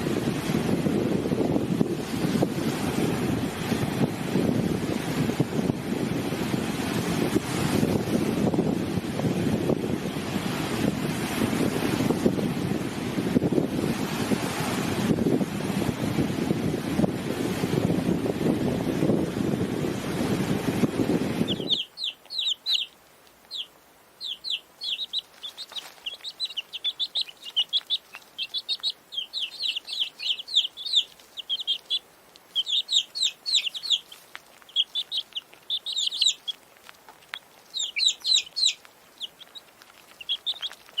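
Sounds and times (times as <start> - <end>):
high-pitched chirping calls: 21.4 - 41.0.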